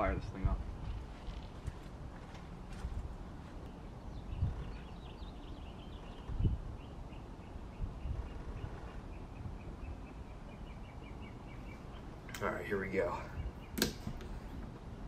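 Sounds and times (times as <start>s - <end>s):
low outdoor rumble: 0.0s - 15.0s
bird chirping: 3.5s - 14.7s.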